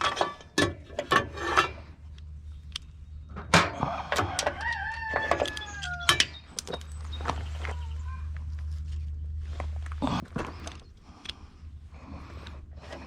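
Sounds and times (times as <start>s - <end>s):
metal parts clicking and knocking: 0.0s - 6.9s
steady low hum: 0.0s - 13.0s
rooster crowing: 3.9s - 6.2s.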